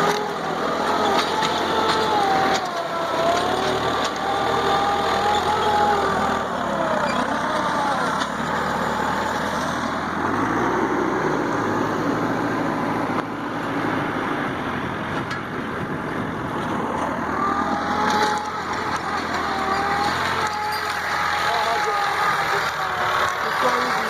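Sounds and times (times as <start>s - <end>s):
tractor engine running: 0.0s - 24.0s.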